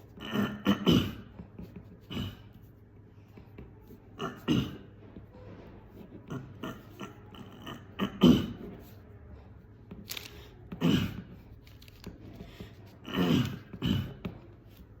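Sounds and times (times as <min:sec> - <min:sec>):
person clearing throat: 0:00.0 - 0:02.7, 0:03.8 - 0:09.0, 0:10.7 - 0:11.5, 0:13.0 - 0:14.6
small grunts: 0:00.0 - 0:02.8, 0:03.4 - 0:09.1, 0:10.1 - 0:15.0.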